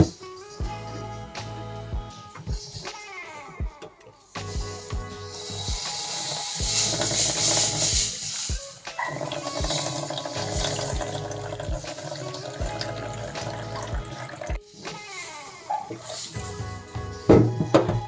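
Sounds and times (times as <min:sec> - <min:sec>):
background music with low beat: 0:00.0 - 0:18.0
tap water running: 0:04.9 - 0:18.0.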